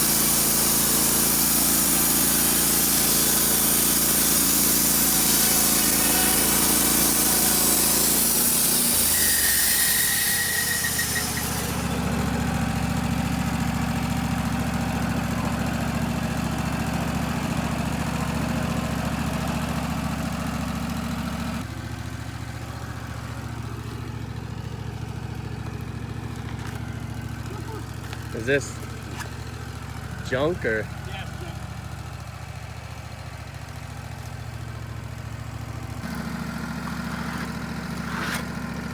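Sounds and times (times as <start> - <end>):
band saw blade cutting log: 0.0 - 20.6, 36.0 - 38.9
sawmill engine running: 0.0 - 38.9
high whistle: 9.1 - 11.7.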